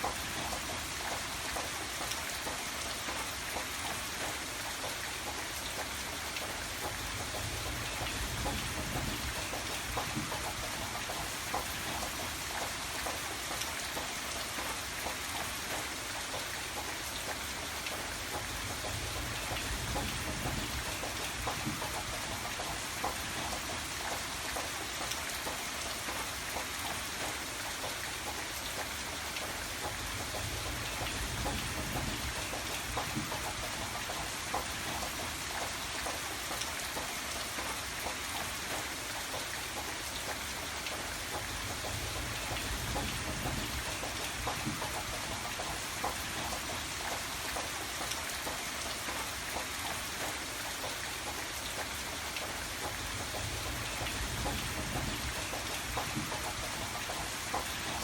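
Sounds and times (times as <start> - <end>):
rain drops pattering: 0.0 - 58.0.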